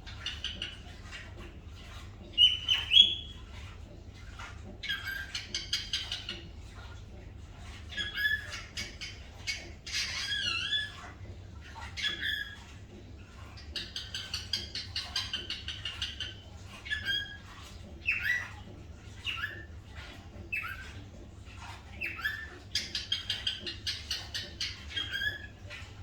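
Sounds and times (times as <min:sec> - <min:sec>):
small animal squeaking: 0:07.9 - 0:11.1, 0:12.0 - 0:12.7, 0:13.8 - 0:17.5, 0:18.1 - 0:18.6, 0:22.0 - 0:25.7.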